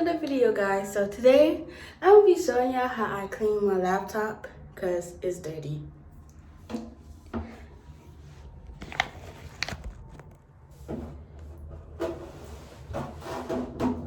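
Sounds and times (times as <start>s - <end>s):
steady low hum: 3.5s - 13.2s.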